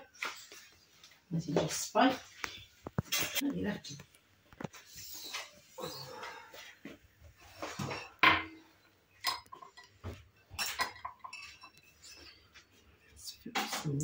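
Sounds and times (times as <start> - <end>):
kitchenware clinking: 7.7 - 12.4, 13.4 - 14.0.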